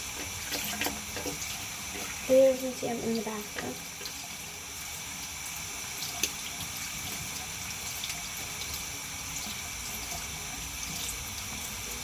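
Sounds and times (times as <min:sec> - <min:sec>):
tap running into a sink: 0:00.0 - 0:02.3, 0:03.0 - 0:04.4.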